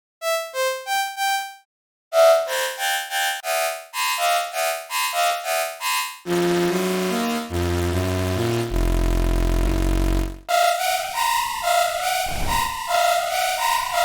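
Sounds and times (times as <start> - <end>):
synthesizer music: 6.3 - 14.0.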